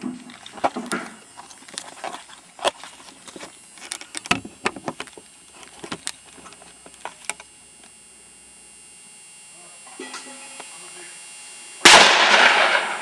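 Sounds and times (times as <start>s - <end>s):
hard objects clicking and clattering: 0.0s - 7.4s.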